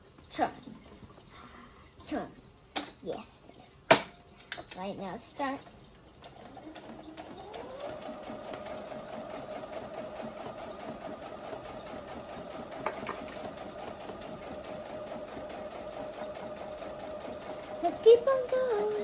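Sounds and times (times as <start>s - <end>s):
sewing machine motor whine: 6.2s - 19.0s.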